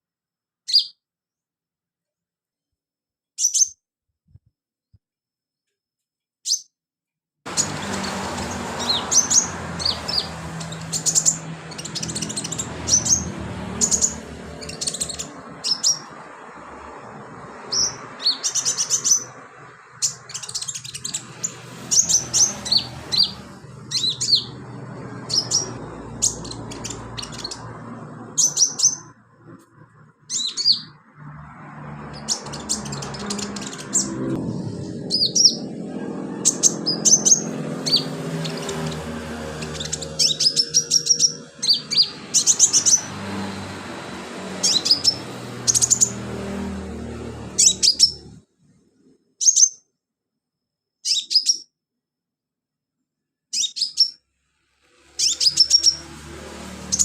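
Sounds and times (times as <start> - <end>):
bird chirping and trilling: 0.6 - 1.0, 3.4 - 3.8, 6.4 - 6.7, 7.5 - 16.4, 17.0 - 48.4, 49.4 - 49.8, 51.0 - 51.8, 53.5 - 54.2, 54.9 - 57.0.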